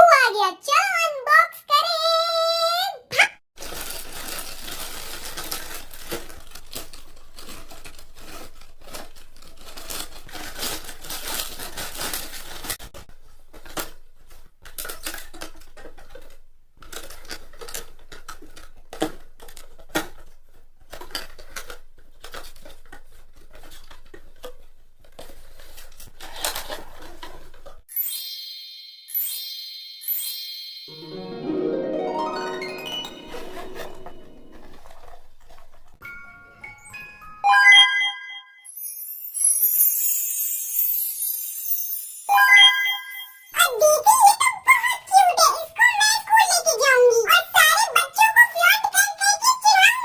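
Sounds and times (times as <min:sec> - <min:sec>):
packaging tearing and crinkling: 0:03.6 - 0:12.8, 0:14.6 - 0:20.3, 0:20.9 - 0:27.7.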